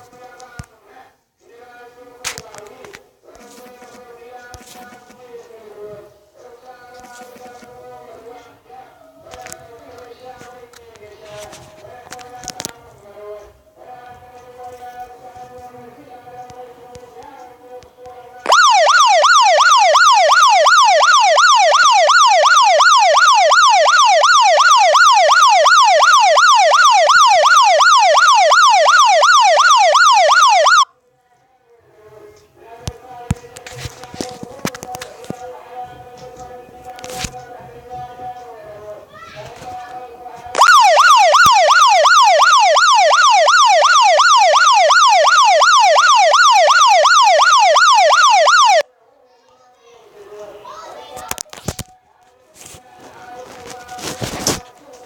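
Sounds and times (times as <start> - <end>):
electronic siren wailing: 18.5 - 30.9, 40.6 - 48.8.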